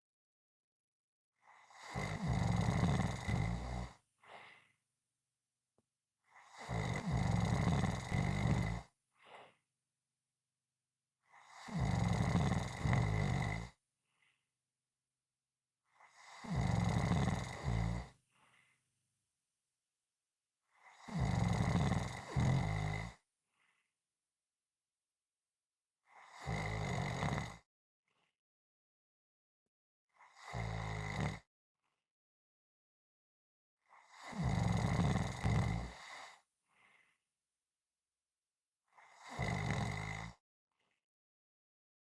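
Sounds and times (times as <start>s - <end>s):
loud snoring: 1.4s - 4.6s, 6.3s - 9.5s, 11.3s - 13.8s, 15.9s - 18.2s, 20.7s - 23.2s, 26.1s - 27.7s, 30.2s - 31.5s, 33.9s - 36.5s, 38.9s - 40.4s
faint breath: 4.2s - 4.8s, 9.2s - 9.6s, 14.1s - 14.4s, 18.3s - 18.9s, 23.5s - 23.9s, 36.2s - 37.2s.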